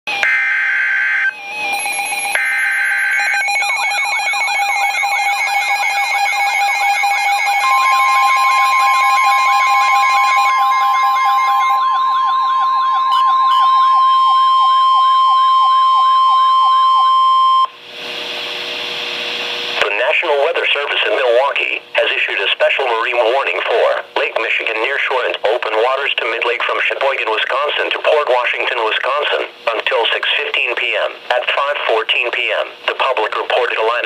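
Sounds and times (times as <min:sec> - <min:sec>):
single-pitch warning alarm tone: 0:00.1 - 0:17.7
electronic siren tones sweeping: 0:00.2 - 0:17.7
data-burst tones: 0:07.0 - 0:17.7.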